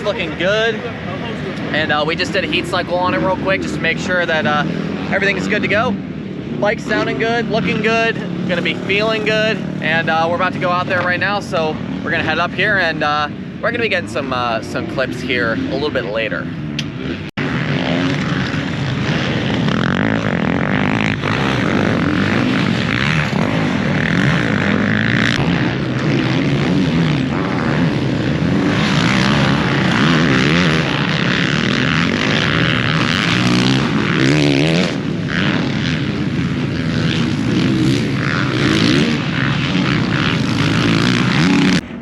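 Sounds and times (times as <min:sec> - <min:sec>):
motorbike engines revving: 0:00.0 - 0:42.0.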